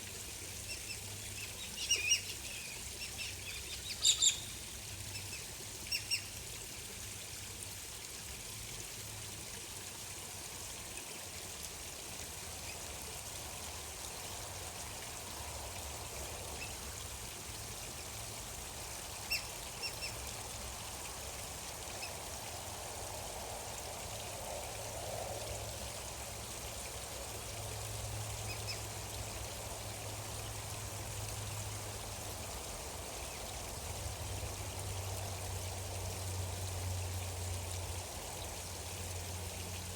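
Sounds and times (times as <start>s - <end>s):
water flowing: 0.0s - 39.9s
bird chirps: 3.6s - 4.5s.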